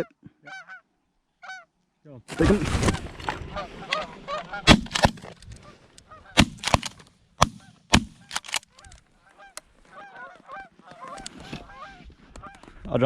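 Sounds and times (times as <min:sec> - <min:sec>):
geese honking: 0:00.0 - 0:01.7, 0:03.5 - 0:06.9, 0:08.7 - 0:12.7
shotgun shots: 0:04.6 - 0:05.4, 0:06.3 - 0:08.7.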